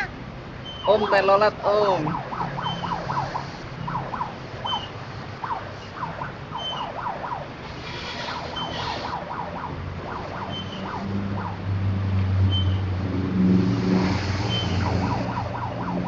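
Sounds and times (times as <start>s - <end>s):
low engine hum: 0.0s - 16.0s
musical horn warbling tones: 7.8s - 9.2s.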